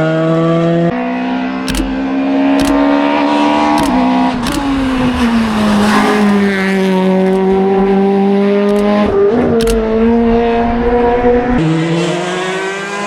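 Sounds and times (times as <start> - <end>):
rally car engine at high revs: 0.0 - 13.0
sharp clicks: 1.6 - 11.4.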